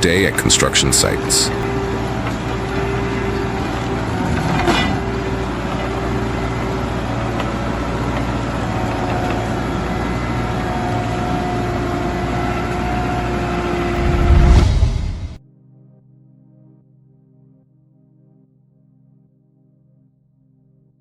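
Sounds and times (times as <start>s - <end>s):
stump grinder engine drone: 0.0s - 15.3s.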